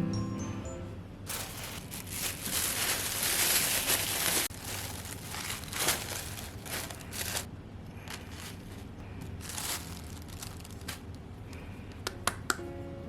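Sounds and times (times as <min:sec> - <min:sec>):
crinkling and rustling handling: 0:01.3 - 0:11.8.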